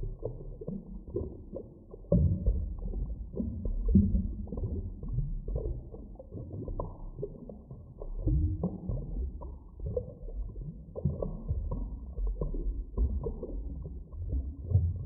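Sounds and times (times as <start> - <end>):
low underwater rumble: 0.0 - 15.0.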